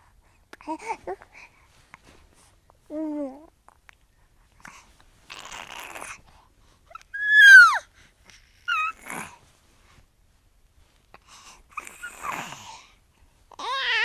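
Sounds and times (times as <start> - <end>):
young fox whining: 6.9 - 7.8, 8.7 - 9.0.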